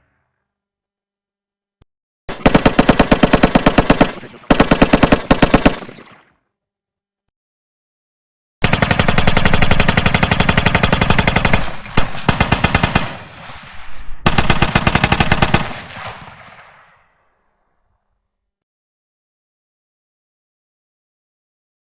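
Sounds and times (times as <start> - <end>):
echo of gunshots: 2.3 - 6.3, 8.6 - 17.6
machine gun automatic fire: 2.3 - 6.3, 8.6 - 13.6, 14.2 - 16.8.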